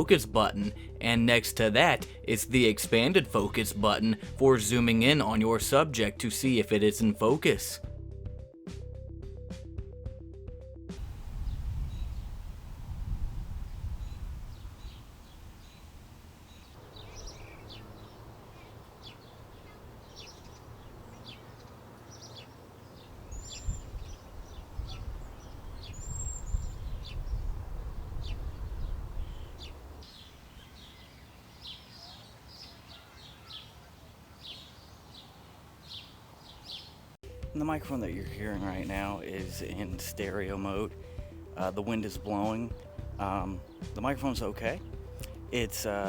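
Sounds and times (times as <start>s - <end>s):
wind rumbling on microphone: 11.0s - 31.2s
birds chirping: 11.0s - 46.0s.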